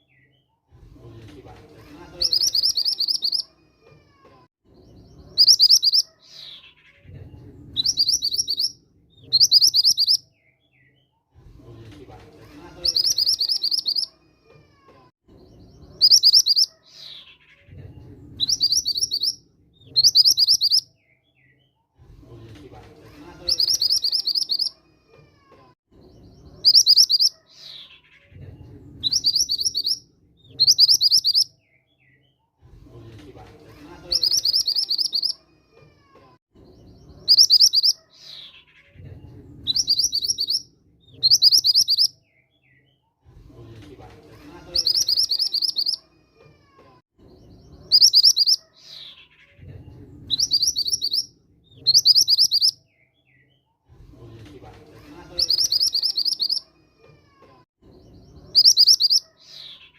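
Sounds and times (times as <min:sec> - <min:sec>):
bird chirping rapidly: 0:02.1 - 0:03.5, 0:04.8 - 0:07.0, 0:07.8 - 0:10.3, 0:12.8 - 0:14.2, 0:15.5 - 0:17.6, 0:18.4 - 0:20.9, 0:23.4 - 0:24.8, 0:26.2 - 0:28.2, 0:29.0 - 0:31.5, 0:34.0 - 0:35.4, 0:36.7 - 0:38.9, 0:39.6 - 0:42.2, 0:44.7 - 0:46.0, 0:47.4 - 0:49.5, 0:50.3 - 0:52.8, 0:55.3 - 0:56.7, 0:58.0 - 0:59.9.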